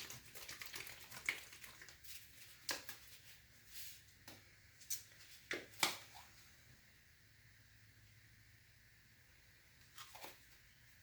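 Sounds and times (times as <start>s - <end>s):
soft rustle: 1.8s - 6.6s.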